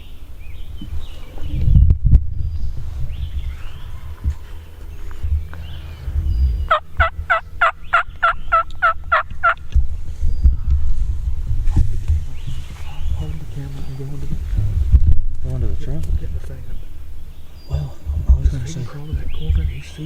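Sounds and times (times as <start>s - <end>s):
low rumble: 0.0s - 20.0s
turkey yelping: 6.7s - 9.6s.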